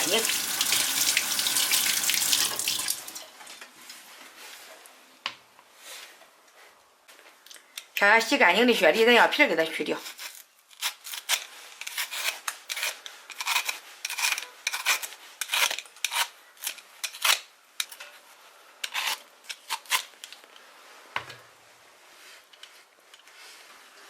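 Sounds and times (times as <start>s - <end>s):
blade scraping fruit peel: 10.0s - 18.0s, 18.8s - 20.1s.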